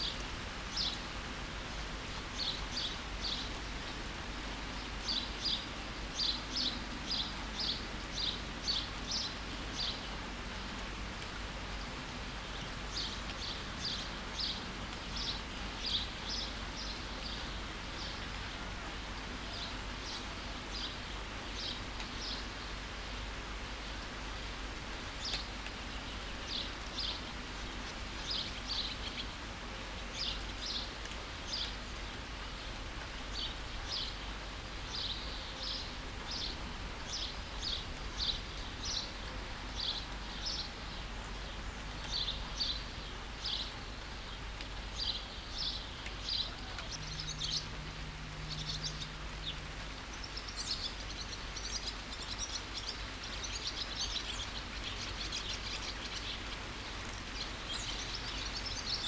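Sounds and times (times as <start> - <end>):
rain hiss: 0.0 - 59.0
bird chirping: 45.0 - 47.8, 48.5 - 59.0.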